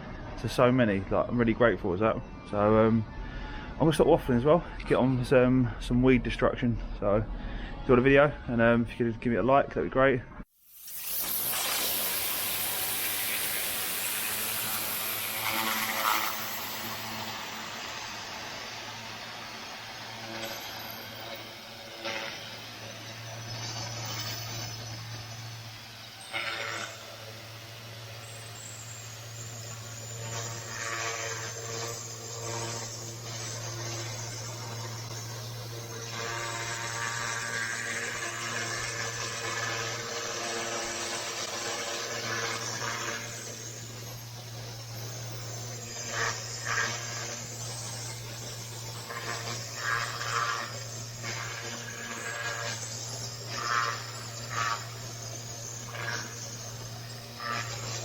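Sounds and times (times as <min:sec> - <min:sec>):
pressure washer jet hissing: 0:10.6 - 0:58.0
engine low hum: 0:12.6 - 0:39.8.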